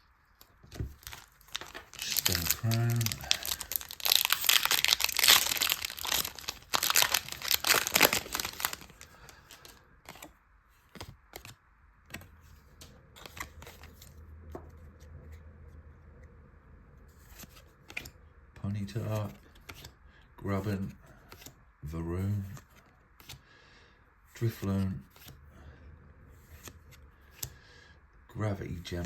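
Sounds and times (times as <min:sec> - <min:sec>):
cards clicking and rustling: 0:00.3 - 0:10.3, 0:10.9 - 0:15.1, 0:19.2 - 0:20.0
foil wrapper tearing and crinkling: 0:01.0 - 0:09.1.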